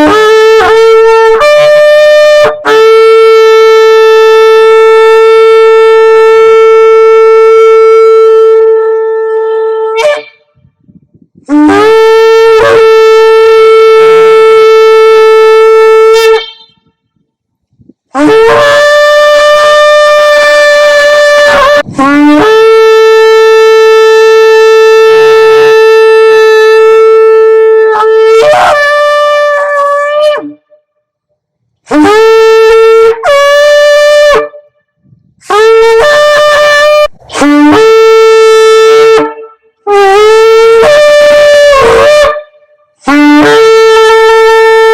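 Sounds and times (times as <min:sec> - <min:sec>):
shofar blasts: 0:00.0 - 0:30.9, 0:31.8 - 0:44.9.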